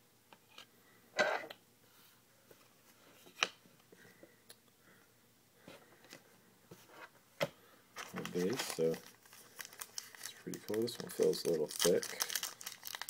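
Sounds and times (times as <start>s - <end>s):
cards rustling: 8.0s - 13.0s.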